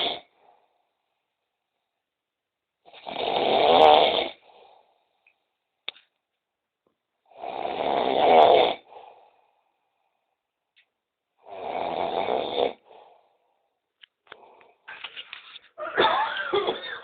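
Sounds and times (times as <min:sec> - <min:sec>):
person snoring: 0:02.8 - 0:04.9, 0:07.3 - 0:09.5, 0:11.4 - 0:13.4.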